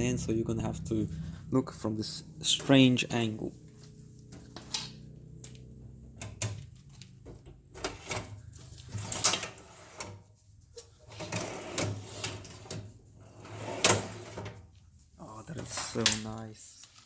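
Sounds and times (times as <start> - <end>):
drawer clicking and scraping: 7.7 - 10.2, 11.0 - 14.6.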